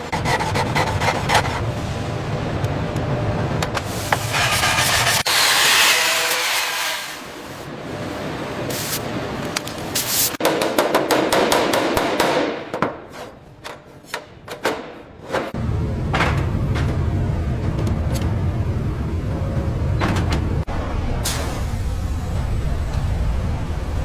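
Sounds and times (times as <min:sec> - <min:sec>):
rasping rubbing noise: 0:04.0 - 0:07.6.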